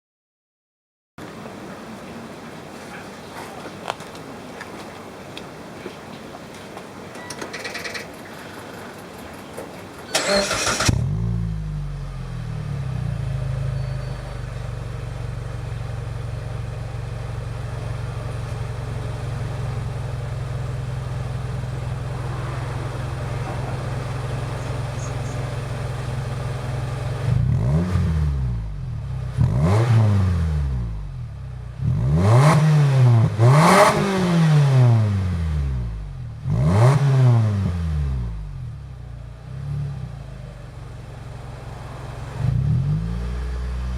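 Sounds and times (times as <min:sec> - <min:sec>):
loud car engine idling and revving: 0:10.4 - 0:43.9.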